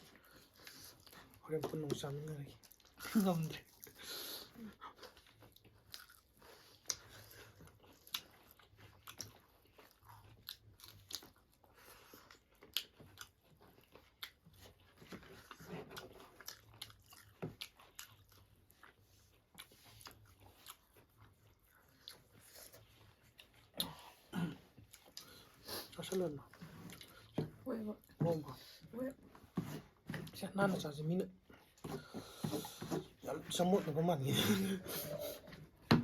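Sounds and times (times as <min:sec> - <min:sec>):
food crunching while chewed: 0:00.0 - 0:27.4.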